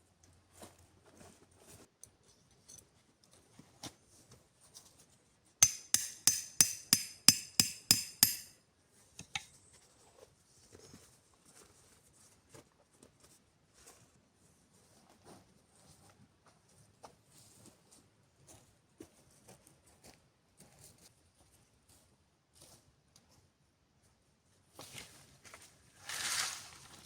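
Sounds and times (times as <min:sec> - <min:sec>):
sharp hammer strikes: 0:05.6 - 0:08.5.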